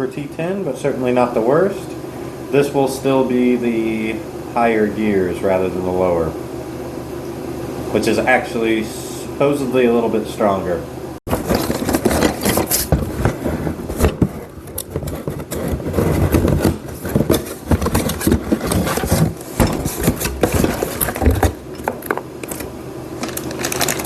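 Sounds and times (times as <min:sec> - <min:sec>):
packaging rustling and scraping: 0:11.3 - 0:24.0.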